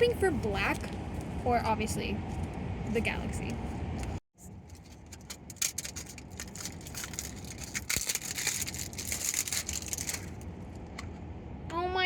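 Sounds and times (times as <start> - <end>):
plastic packaging crinkling: 4.7 - 10.5.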